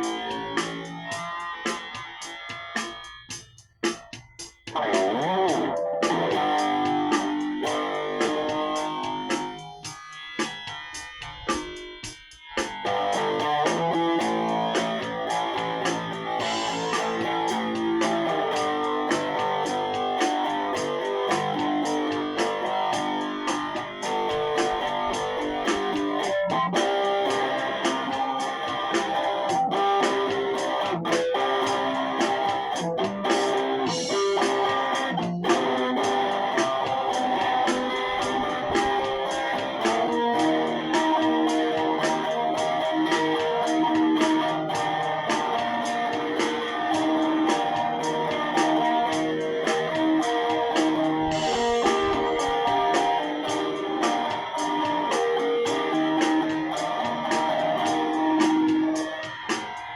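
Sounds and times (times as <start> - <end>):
electric guitar melody: 0.0 - 59.9.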